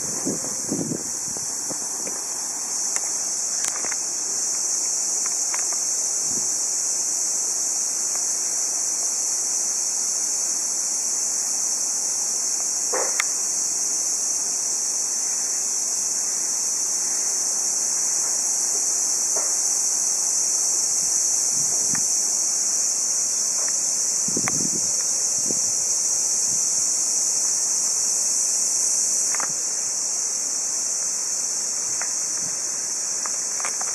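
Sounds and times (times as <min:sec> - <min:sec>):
high-pitched hiss: 0:00.0 - 0:33.9.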